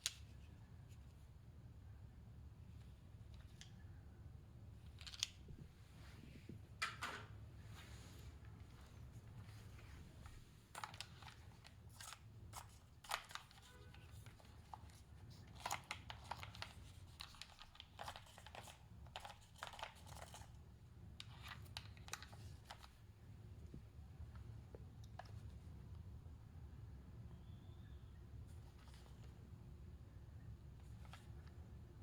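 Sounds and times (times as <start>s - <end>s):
low steady hum: 0.0s - 32.0s
faint clicks and crinkles: 2.7s - 4.0s, 4.8s - 6.1s, 8.4s - 26.1s, 27.4s - 29.7s, 30.3s - 32.0s.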